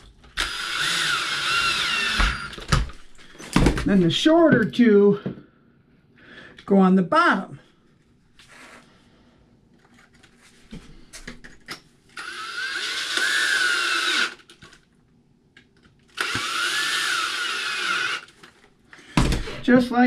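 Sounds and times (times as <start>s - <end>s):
cordless power driver whining: 0.3s - 3.0s, 12.2s - 14.5s, 16.1s - 18.4s.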